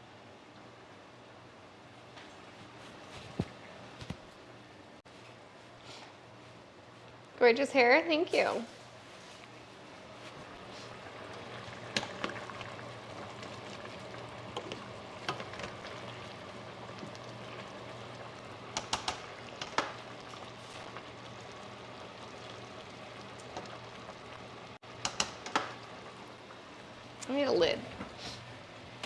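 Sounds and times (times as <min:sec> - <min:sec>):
food sizzling on stovetop: 0:07.5 - 0:29.0.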